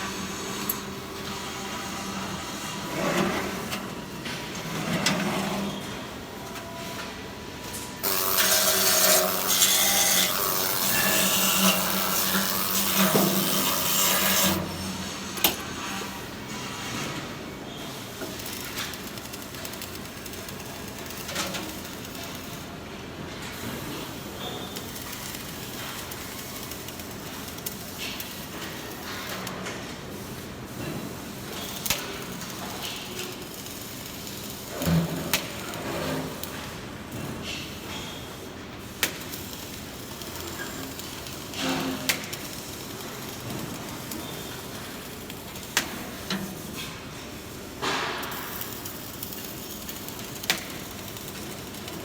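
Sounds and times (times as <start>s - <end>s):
welding arc hissing: 8.0s - 14.6s, 48.2s - 52.0s.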